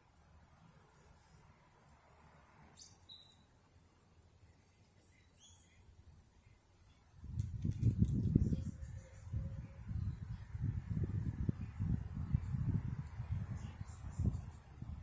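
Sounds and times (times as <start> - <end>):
high-pitched insect trill: 0.0 - 15.0
bird chirps: 2.8 - 3.5, 5.0 - 5.9, 13.5 - 14.6.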